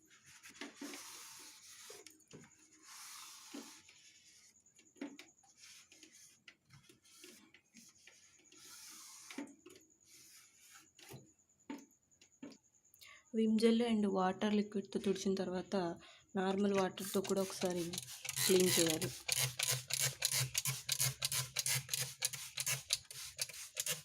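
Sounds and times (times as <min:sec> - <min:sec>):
cloth rubbing on plastic: 0:17.0 - 0:19.2.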